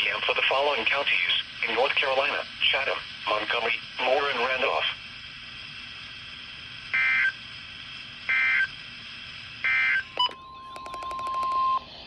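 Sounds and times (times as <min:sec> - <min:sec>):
shrill two-tone data chirps: 0:10.2 - 0:11.7
steady beep-like tone: 0:10.2 - 0:11.8.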